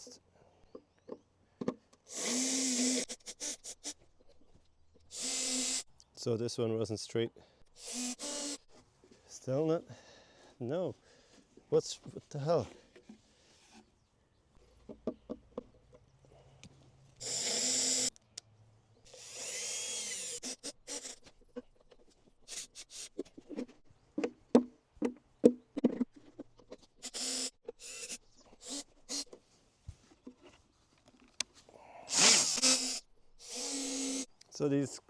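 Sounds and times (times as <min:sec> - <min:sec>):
power drill whirring: 0:02.1 - 0:04.0, 0:05.1 - 0:05.9, 0:07.8 - 0:08.7, 0:17.2 - 0:18.1, 0:19.1 - 0:21.4, 0:27.0 - 0:29.3, 0:32.1 - 0:34.3
sharp knocks and clicks: 0:23.2 - 0:26.9.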